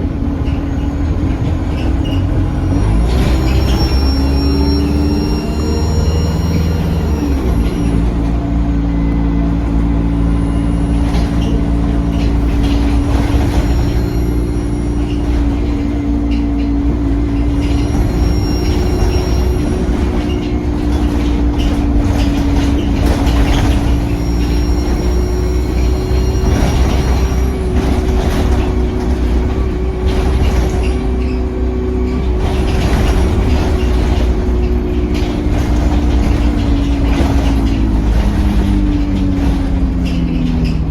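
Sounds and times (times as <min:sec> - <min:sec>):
bus diesel engine droning: 0:00.0 - 0:40.9
faint high whistle: 0:03.7 - 0:07.9.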